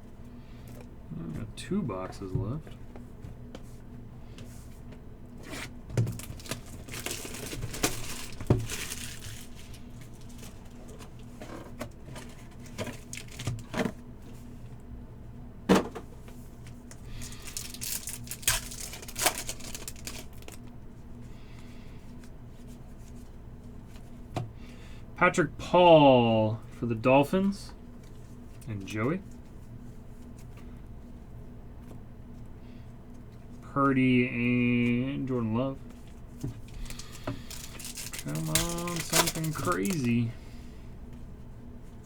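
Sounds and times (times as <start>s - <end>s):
foil wrappers tearing and crinkling: 5.9s - 11.2s, 12.2s - 13.7s, 16.9s - 20.6s, 36.7s - 40.3s
cards clicking and tapping: 36.8s - 40.1s.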